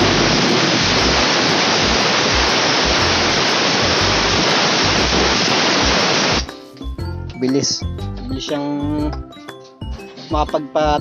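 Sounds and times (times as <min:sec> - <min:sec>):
pressure washer jet spraying: 0:00.0 - 0:06.5.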